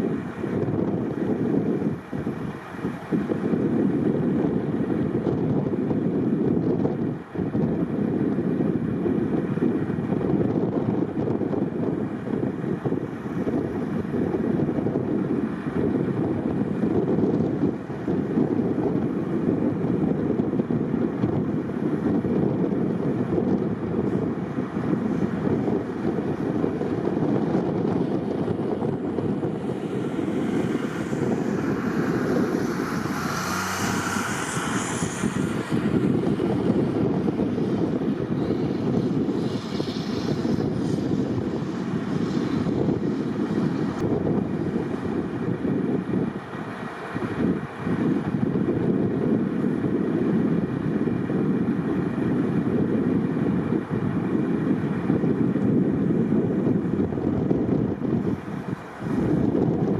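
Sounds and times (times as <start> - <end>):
freeway traffic rumble: 0.0 - 59.9
snowplows: 0.0 - 59.9
wind noise on microphone: 0.0 - 59.9
vehicle passing: 29.2 - 44.0.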